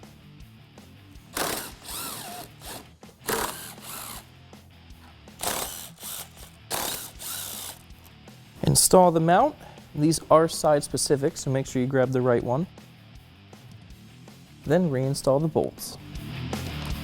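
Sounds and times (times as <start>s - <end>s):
faint background music: 0.0s - 17.0s
ratchet clicking: 1.4s - 4.2s, 5.4s - 8.1s.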